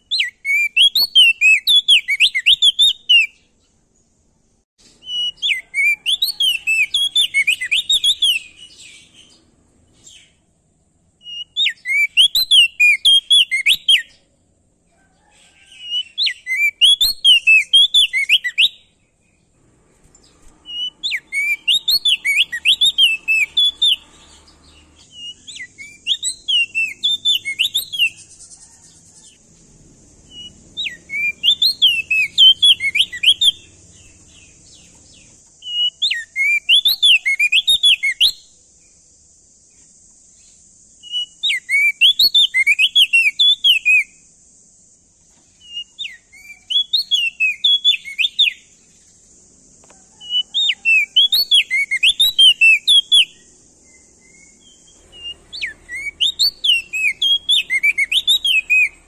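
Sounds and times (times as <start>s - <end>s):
bird singing whistled phrases: 0.0s - 3.5s, 5.0s - 9.4s, 11.2s - 14.2s, 15.5s - 19.0s, 20.3s - 29.4s, 30.3s - 38.5s, 41.0s - 44.2s, 45.6s - 48.7s, 50.1s - 59.0s
faint high hiss: 3.2s - 59.0s.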